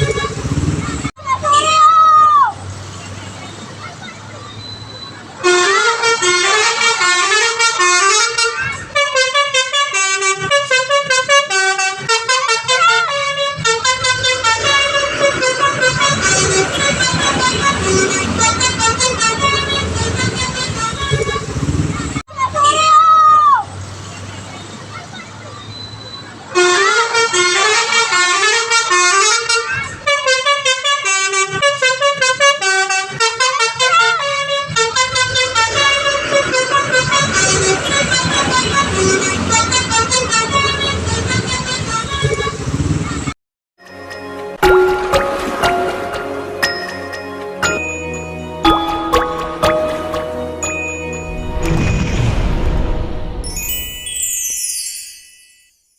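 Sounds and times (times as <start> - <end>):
bus musical horn melody: 5.4 - 21.7, 26.6 - 42.5, 43.9 - 53.4.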